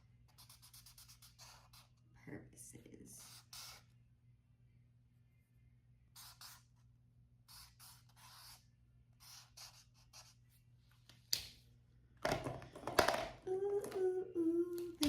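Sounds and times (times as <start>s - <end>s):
marker pen scratching on paper: 0.3s - 2.0s, 3.2s - 3.9s, 6.2s - 6.8s, 7.5s - 10.5s.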